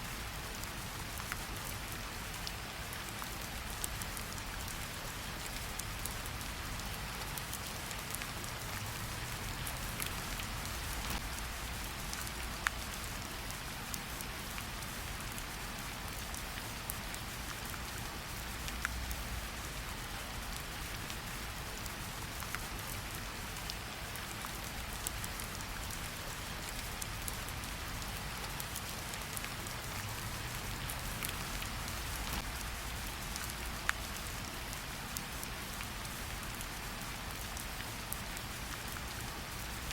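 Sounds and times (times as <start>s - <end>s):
steady rain: 0.0s - 39.9s
raindrop ticks: 5.4s - 13.6s, 16.1s - 19.4s, 23.6s - 36.7s.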